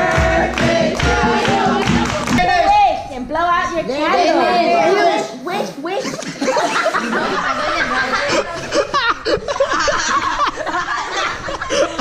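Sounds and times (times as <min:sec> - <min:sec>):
people laughing and chattering: 0:03.8 - 0:12.0.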